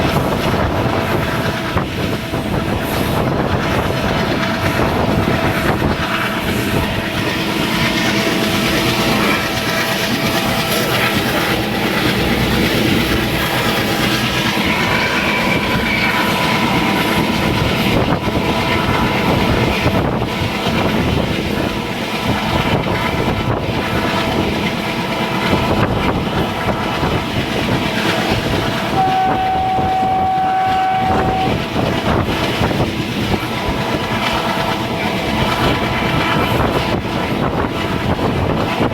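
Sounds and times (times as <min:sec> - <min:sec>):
diesel locomotive rumbling: 0:00.0 - 0:38.9
locomotive horn: 0:28.9 - 0:31.8.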